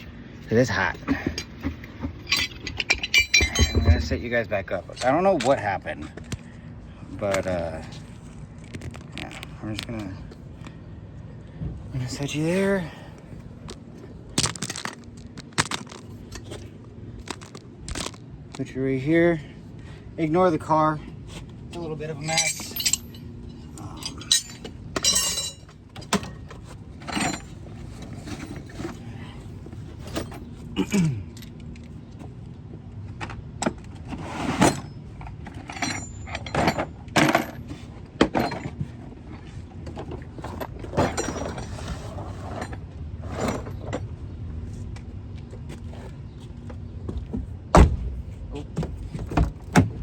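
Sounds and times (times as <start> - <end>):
metal tools clinking and rattling: 0.5 - 5.8, 21.8 - 31.9, 34.4 - 38.9, 39.9 - 44.1.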